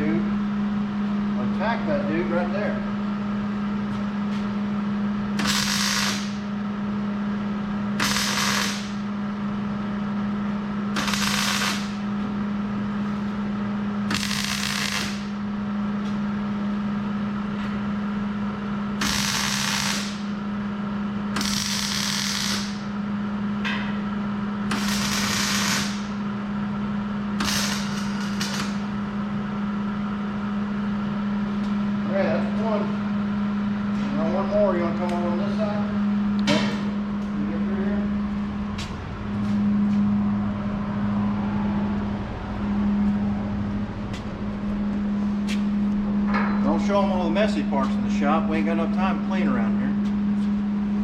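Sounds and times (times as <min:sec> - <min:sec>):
welding arc crackling: 0:05.4 - 0:06.5, 0:07.9 - 0:09.1, 0:11.0 - 0:12.0, 0:14.1 - 0:15.4, 0:19.0 - 0:20.4, 0:21.4 - 0:22.9, 0:24.7 - 0:26.2, 0:27.4 - 0:28.9
low hum: 0:22.7 - 0:51.0.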